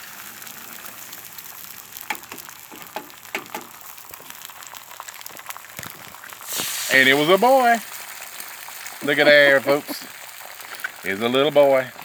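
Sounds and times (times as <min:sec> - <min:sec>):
oil sizzling on griddle: 0:00.0 - 0:12.0
sharp taps and clicks: 0:02.0 - 0:03.7.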